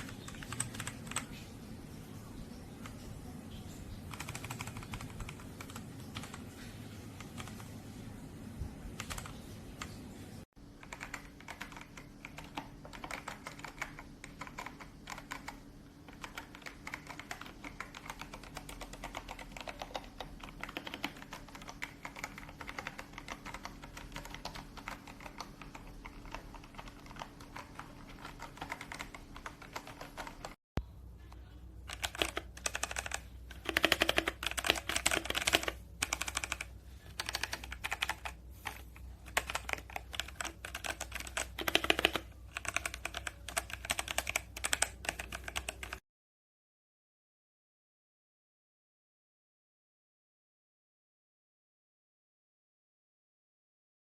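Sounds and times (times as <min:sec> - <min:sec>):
mechanical keyboard typing: 0:00.0 - 0:01.5, 0:02.5 - 0:07.8, 0:08.9 - 0:10.0, 0:10.7 - 0:30.6, 0:31.8 - 0:46.0.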